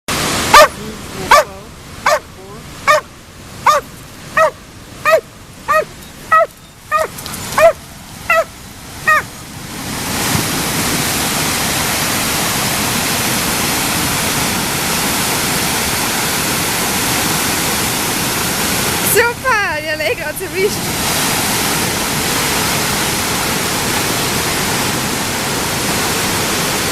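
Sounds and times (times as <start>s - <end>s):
waterfall rushing: 0.1s - 26.9s
dog barking: 0.5s - 8.5s, 9.1s - 9.3s.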